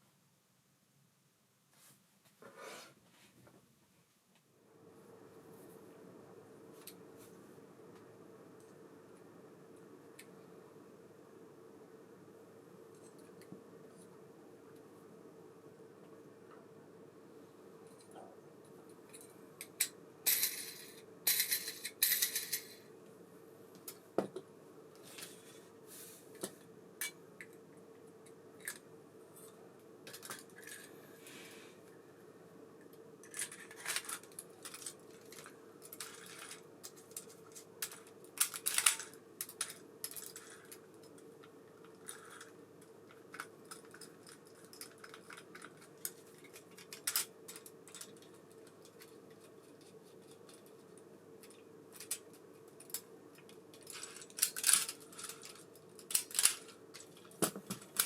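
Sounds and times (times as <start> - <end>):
faint steady hum: 0.0 - 58.0
small metal tools clinking: 20.3 - 22.8.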